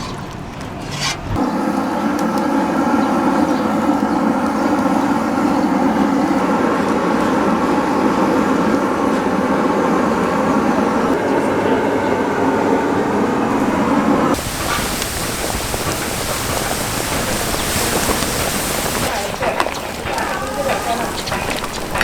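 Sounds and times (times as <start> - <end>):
low rumbling noise: 1.4 - 22.0
crackling wood fire: 13.5 - 22.0.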